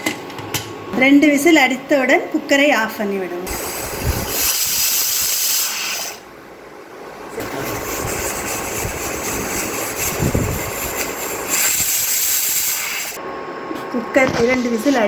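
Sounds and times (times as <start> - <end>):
pressure cooker whistle hissing: 3.5 - 6.2, 10.0 - 13.2.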